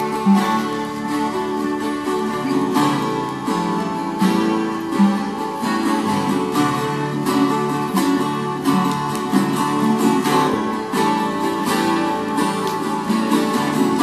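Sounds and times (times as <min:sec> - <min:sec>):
acoustic guitar strumming and picking: 0:00.0 - 0:14.0.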